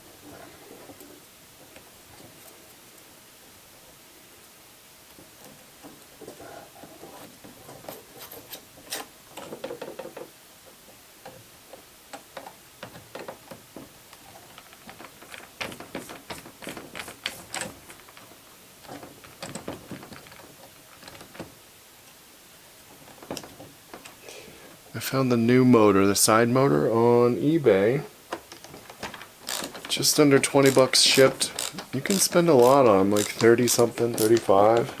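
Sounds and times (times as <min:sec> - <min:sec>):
plastic parts clicking and rattling: 0:14.2 - 0:21.5, 0:28.3 - 0:35.0.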